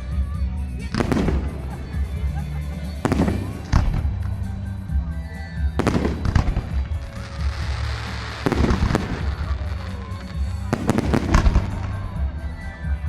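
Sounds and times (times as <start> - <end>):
fireworks crackling: 0.8 - 13.0.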